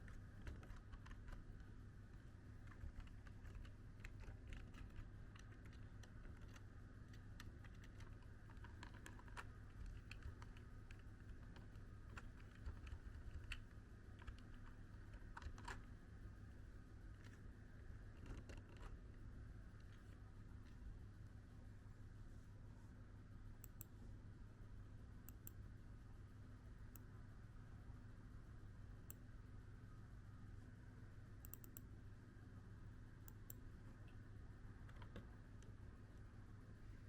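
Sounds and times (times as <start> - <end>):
steady low hum: 0.0 - 37.0
light clicks: 23.6 - 23.9, 25.3 - 25.6, 31.4 - 31.9.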